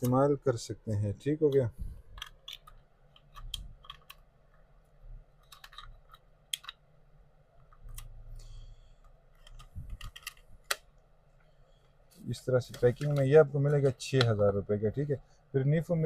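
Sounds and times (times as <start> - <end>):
plastic items clicking and tapping: 2.0 - 4.3, 5.4 - 6.8, 9.3 - 10.9, 12.6 - 14.4.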